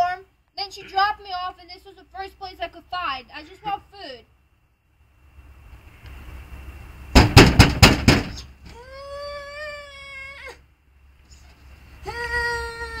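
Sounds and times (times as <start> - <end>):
loud bangs: 7.1 - 8.5.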